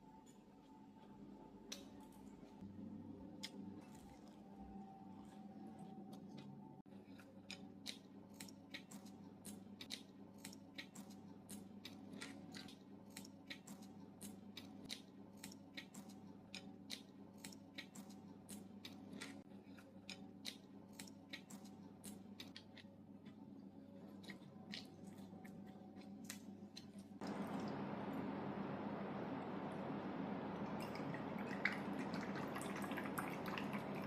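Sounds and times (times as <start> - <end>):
faint low hum: 0.0 - 34.0
person chewing crunchy food: 3.4 - 27.9.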